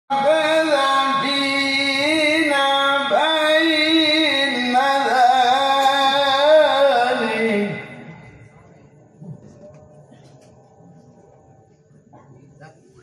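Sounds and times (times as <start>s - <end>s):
man reciting melodically: 0.1s - 8.3s.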